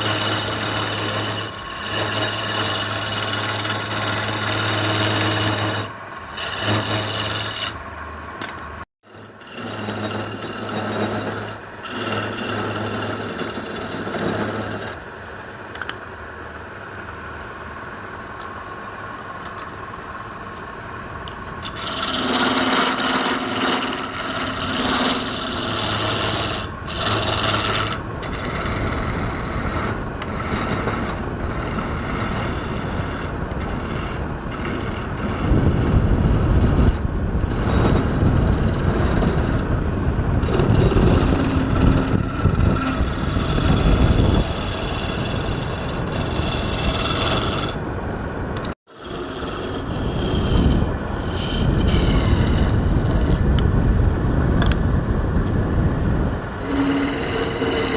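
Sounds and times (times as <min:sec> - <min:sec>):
abrasive tool rasping wood: 0:00.0 - 0:07.8, 0:08.4 - 0:15.1, 0:21.6 - 0:39.8, 0:40.4 - 0:47.8, 0:48.6 - 0:53.4, 0:56.6 - 0:57.9
low motor hum: 0:00.0 - 0:57.9.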